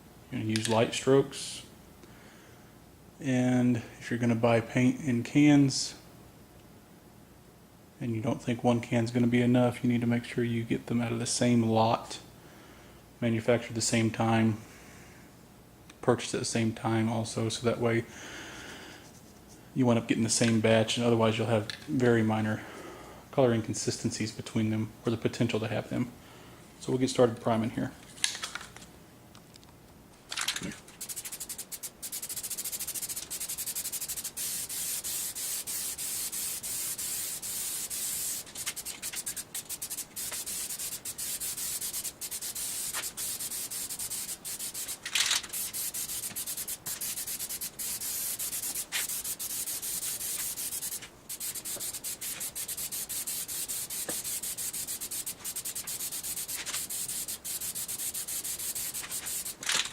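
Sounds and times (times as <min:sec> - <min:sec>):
aerosol can spraying hiss: 0:31.0 - 0:59.6.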